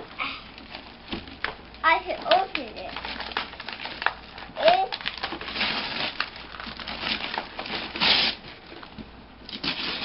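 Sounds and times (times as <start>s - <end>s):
loud cardboard rip: 7.9s - 8.4s.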